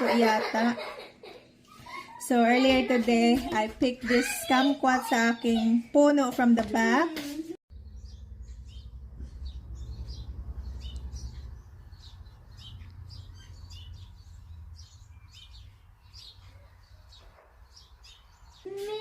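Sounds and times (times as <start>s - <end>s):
low rumble: 7.7s - 15.9s
small birds chirping: 7.7s - 19.0s.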